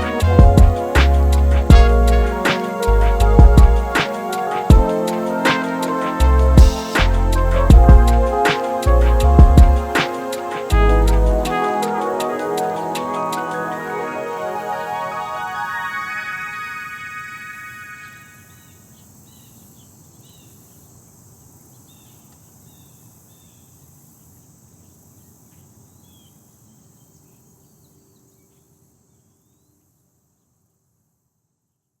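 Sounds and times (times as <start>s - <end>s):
music track: 0.0s - 18.5s
outdoor hiss: 0.0s - 31.4s
small birds chirping: 18.4s - 29.9s.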